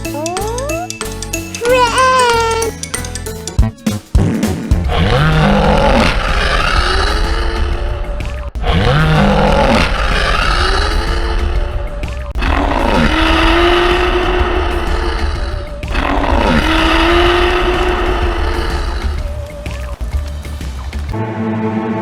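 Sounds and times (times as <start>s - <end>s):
heavy bass rumble: 4.2s - 21.2s.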